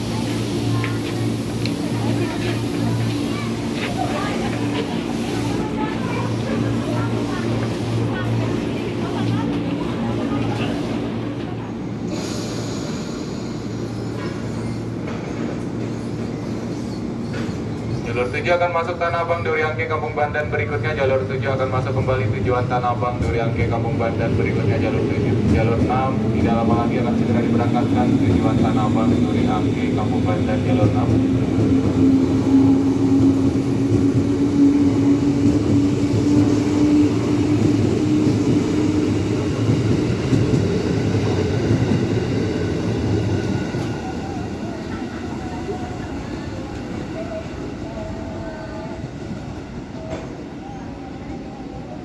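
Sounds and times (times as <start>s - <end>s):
electric train humming: 19.9s - 50.0s.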